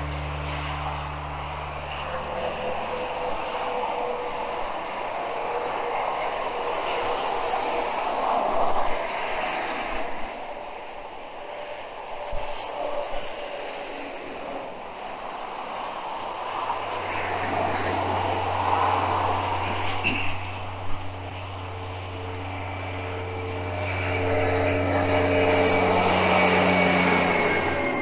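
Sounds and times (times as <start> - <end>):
vehicle engine humming: 0.0 - 6.9, 16.4 - 28.0
road or wind noise: 0.0 - 13.5, 14.2 - 28.0.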